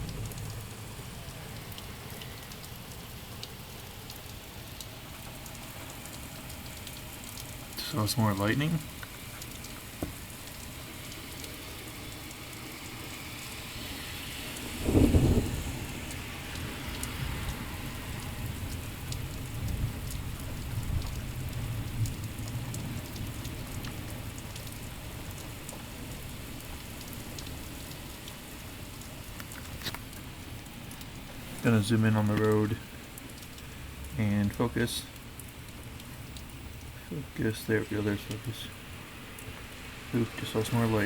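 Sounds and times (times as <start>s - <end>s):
thunder clap and rumble: 0.0s - 2.2s, 14.6s - 24.4s
heavy rain pouring: 0.0s - 41.0s.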